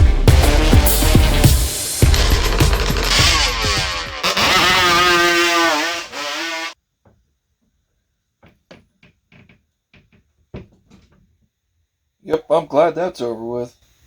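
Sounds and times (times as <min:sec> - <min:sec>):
engine revving: 0:00.1 - 0:06.8.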